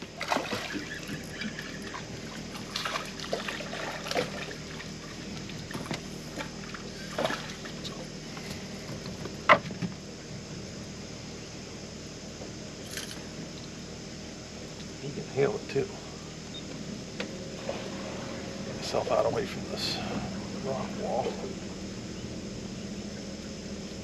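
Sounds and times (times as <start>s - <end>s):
water splashing and sloshing: 0.0s - 10.0s, 17.2s - 24.0s.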